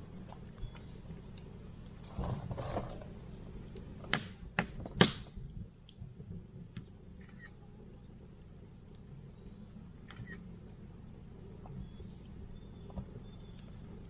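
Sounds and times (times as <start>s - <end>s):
campfire crackling: 0.0s - 14.0s
loud pops of burning firewood: 4.0s - 5.4s.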